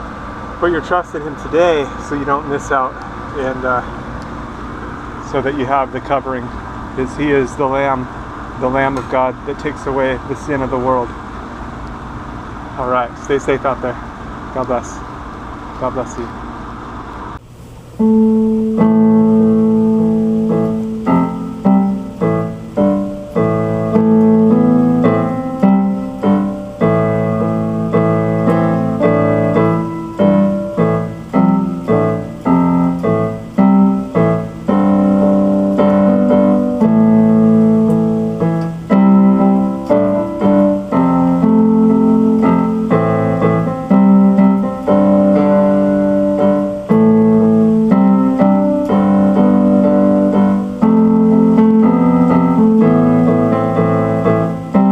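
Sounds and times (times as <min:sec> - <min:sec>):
piano music: 0:17.9 - 0:54.9.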